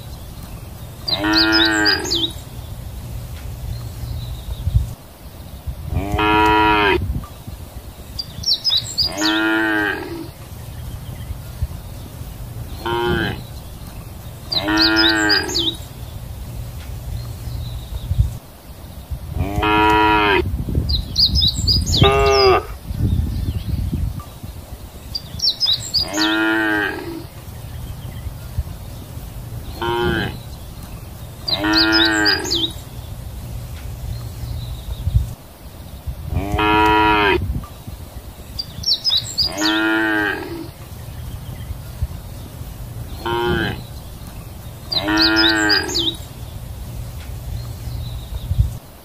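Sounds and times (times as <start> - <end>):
cows mooing: 1.1 - 2.3, 5.9 - 7.0, 9.0 - 10.3, 12.8 - 13.4, 14.5 - 15.8, 19.4 - 20.5, 26.0 - 27.3, 29.8 - 30.4, 31.5 - 32.7, 36.3 - 37.5, 39.4 - 40.7, 43.2 - 43.8, 44.9 - 46.2.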